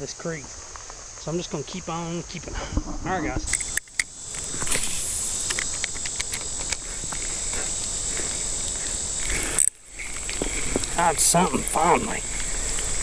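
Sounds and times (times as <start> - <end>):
high-pitched insect buzz: 0.0 - 13.0
creek water rushing: 6.8 - 13.0.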